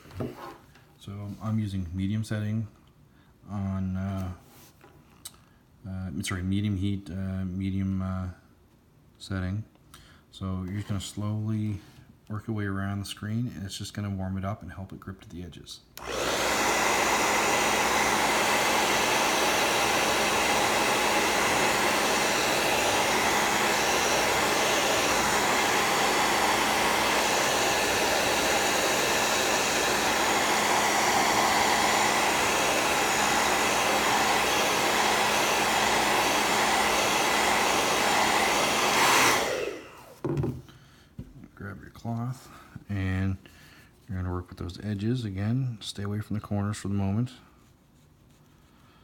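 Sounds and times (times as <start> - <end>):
hair dryer running: 16.0 - 40.6.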